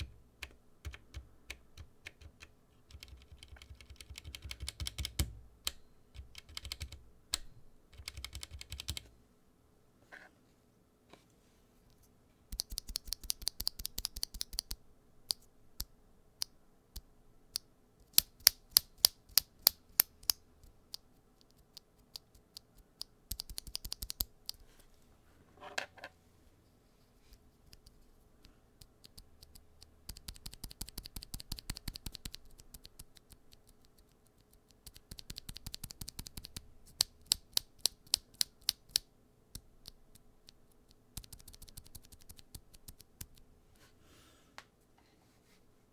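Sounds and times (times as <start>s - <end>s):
mechanical keyboard key clicks: 0.0s - 9.1s, 12.6s - 14.8s, 23.3s - 24.6s.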